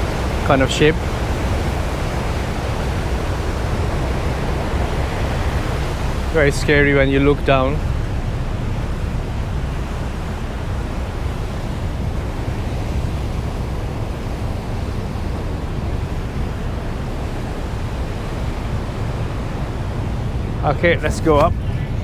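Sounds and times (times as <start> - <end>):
rough sea water streaming: 0.0 - 22.0.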